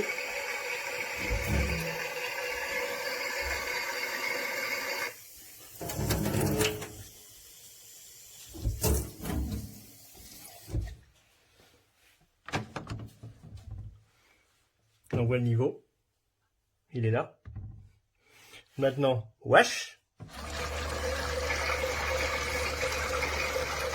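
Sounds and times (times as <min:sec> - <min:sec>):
toy washing machine water hiss: 0:00.0 - 0:10.8, 0:20.3 - 0:23.9.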